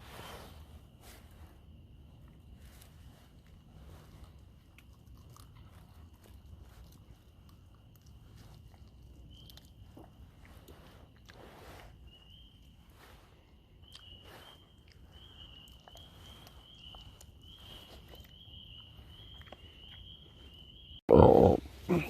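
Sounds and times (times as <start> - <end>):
soft rustles: 0.0 - 20.6.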